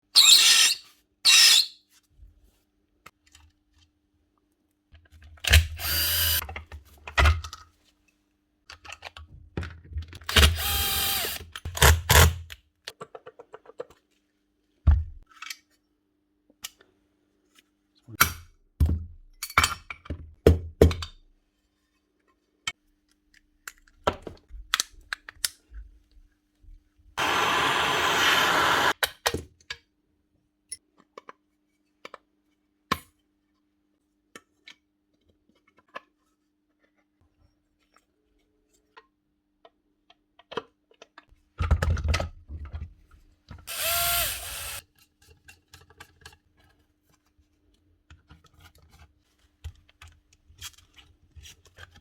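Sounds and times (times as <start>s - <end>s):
electric sander running: 27.2s - 28.9s, 43.7s - 44.8s.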